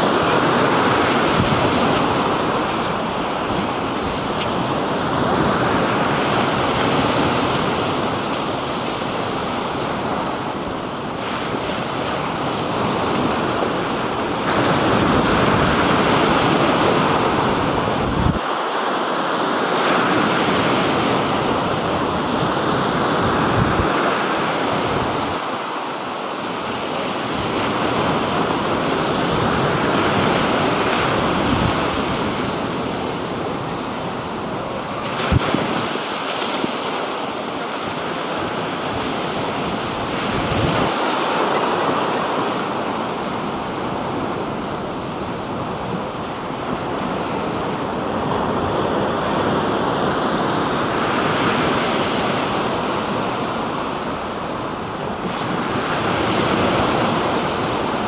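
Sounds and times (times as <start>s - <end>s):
waves washing onto shore: 0.0s - 58.0s
wind buffeting microphone: 11.6s - 18.5s, 38.4s - 41.1s.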